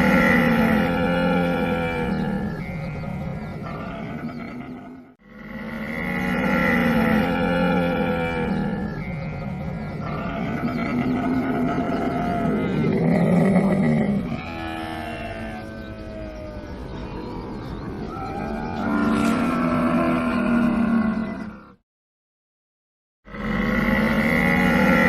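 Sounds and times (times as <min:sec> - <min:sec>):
camel calling: 0:00.0 - 0:16.8.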